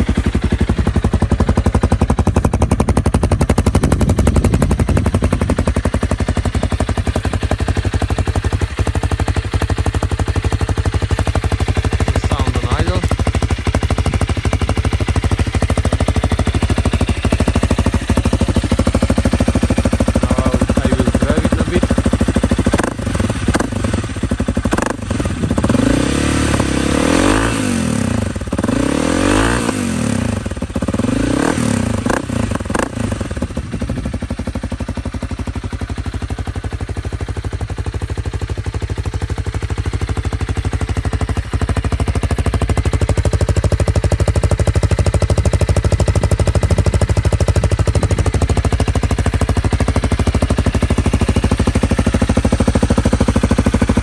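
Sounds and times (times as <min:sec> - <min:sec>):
motorcycle engine idling: 0:00.0 - 0:54.0
engine revving: 0:22.7 - 0:24.1, 0:24.7 - 0:33.4.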